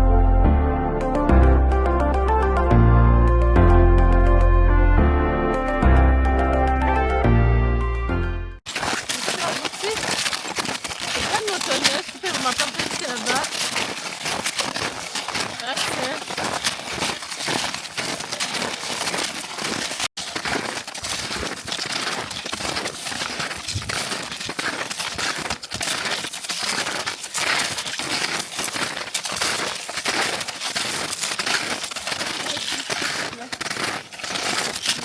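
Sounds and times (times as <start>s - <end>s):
footsteps crunching in snow: 8.6s - 35.0s.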